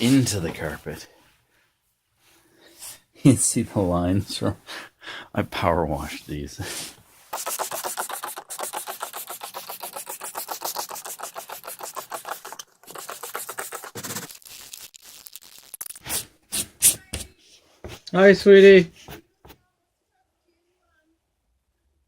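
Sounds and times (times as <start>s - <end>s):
brush scrubbing carpet: 6.0s - 14.3s.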